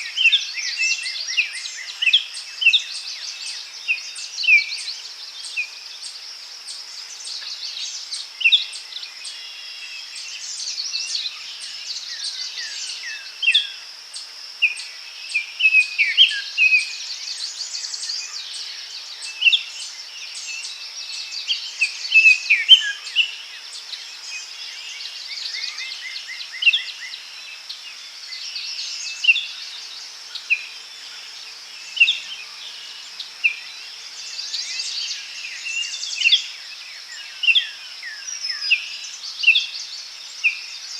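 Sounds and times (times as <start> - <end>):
high insect drone: 0.0 - 40.9
birds chirping and whistling: 19.5 - 23.3.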